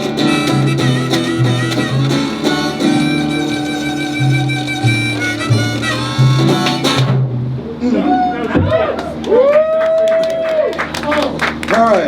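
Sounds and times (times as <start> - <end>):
fiddle: 0.0 - 7.2
live country band playing: 0.0 - 7.8.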